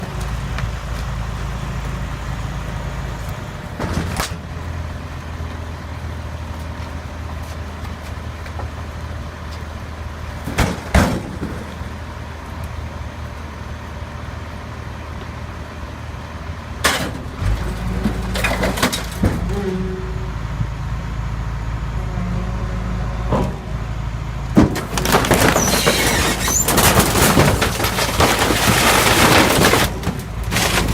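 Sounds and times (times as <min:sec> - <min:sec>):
large engine running: 0:00.0 - 0:30.9
loud bangs and crunches: 0:16.8 - 0:19.6, 0:24.5 - 0:30.9.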